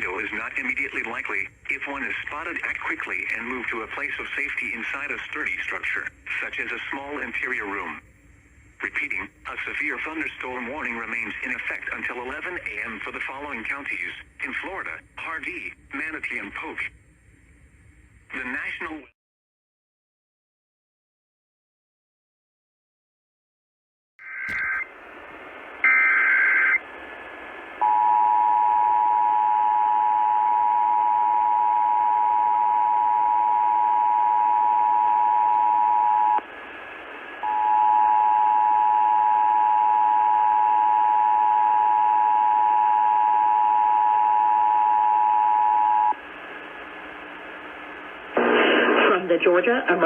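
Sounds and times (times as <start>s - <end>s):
screeching data bursts: 24.2s - 24.9s
two-tone attention signal: 24.2s - 24.9s.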